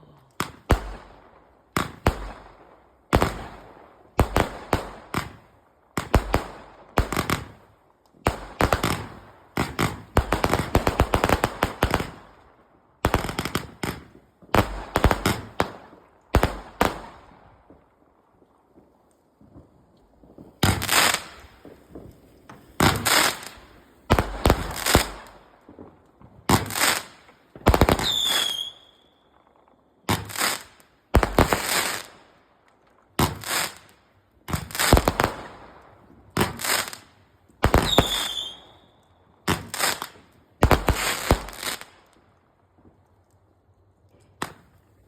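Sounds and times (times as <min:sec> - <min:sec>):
fireworks bangs: 0:00.4 - 0:12.3, 0:13.0 - 0:17.9, 0:18.7 - 0:29.2, 0:30.0 - 0:32.2, 0:33.1 - 0:33.9, 0:34.5 - 0:42.1
falling firework whistle: 0:27.9 - 0:29.3, 0:37.7 - 0:39.7.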